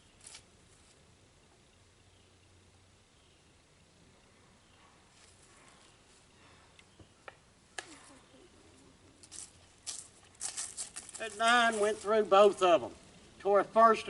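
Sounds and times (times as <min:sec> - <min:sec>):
rustling: 0:00.0 - 0:01.0, 0:07.7 - 0:13.4.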